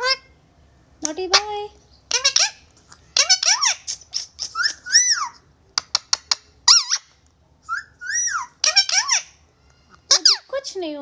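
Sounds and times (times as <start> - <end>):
parrot squeaky whistles: 3.2 - 5.4, 6.7 - 9.4.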